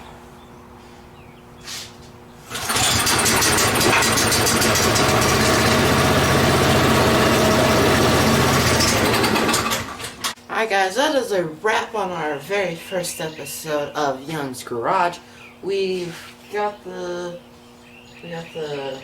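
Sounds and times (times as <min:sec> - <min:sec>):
go-kart engine starting: 0:02.5 - 0:10.4.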